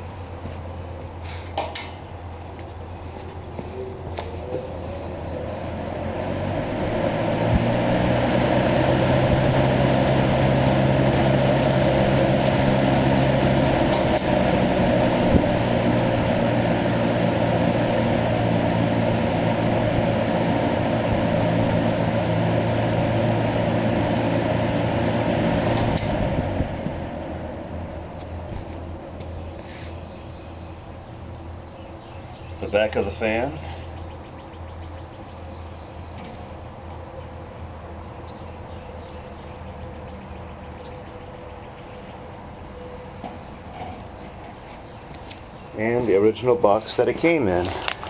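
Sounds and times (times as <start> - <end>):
air rushing from fan blades: 0.0 - 34.2
box fan motor humming: 2.1 - 48.0.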